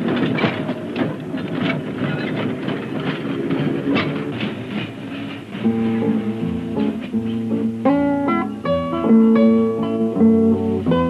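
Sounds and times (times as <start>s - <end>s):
tram rattling along rails: 0.0s - 11.0s
plucked guitar music: 3.4s - 11.0s.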